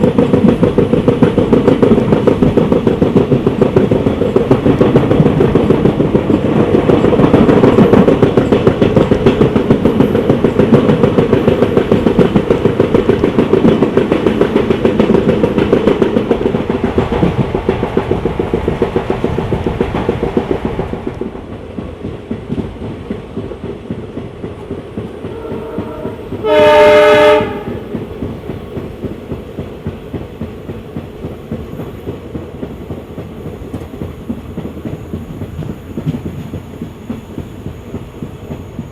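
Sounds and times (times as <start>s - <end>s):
train wheels clattering on track: 0.0s - 38.9s
locomotive horn: 25.3s - 27.8s.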